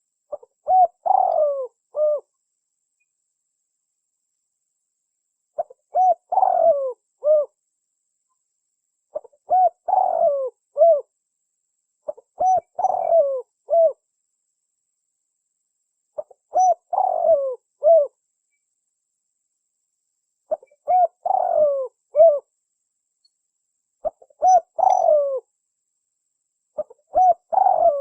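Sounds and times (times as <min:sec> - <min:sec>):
dove cooing: 0:00.0 - 0:02.3, 0:05.6 - 0:07.6, 0:09.1 - 0:11.1, 0:12.1 - 0:14.0, 0:16.2 - 0:18.2, 0:20.5 - 0:22.5, 0:24.0 - 0:25.5, 0:26.8 - 0:28.0.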